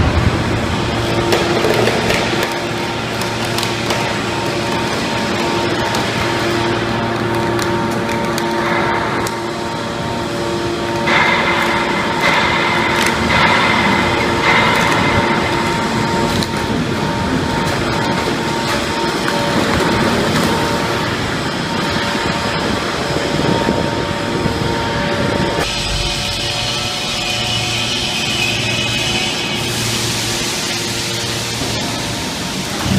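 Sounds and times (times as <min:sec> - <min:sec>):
hydraulic pump motor hum: 0:25.6 - 0:32.9.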